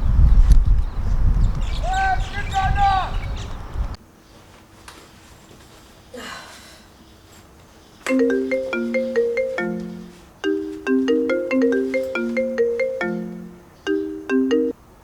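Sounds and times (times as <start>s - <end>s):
faint rustle: 3.8s - 12.7s
marimba phone ringtone: 8.1s - 14.8s.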